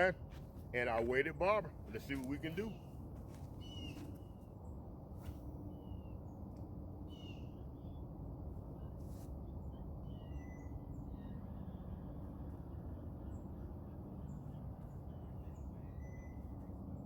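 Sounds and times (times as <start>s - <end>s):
low background rumble: 0.0s - 17.0s
birds whistling: 3.6s - 4.4s, 15.1s - 16.6s.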